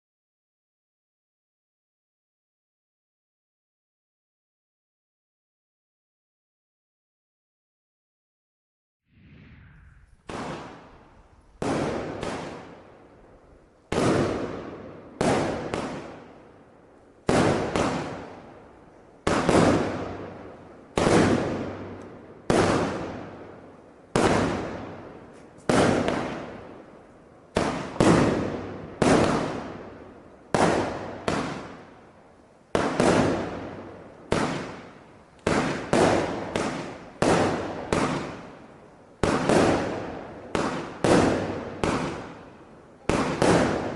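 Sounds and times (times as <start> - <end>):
fireworks bangs: 9.1 - 43.9.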